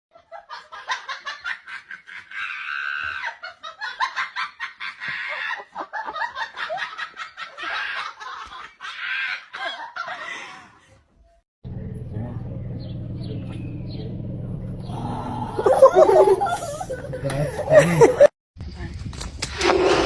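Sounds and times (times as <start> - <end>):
people laughing hard: 0.2 - 11.1, 15.6 - 18.3.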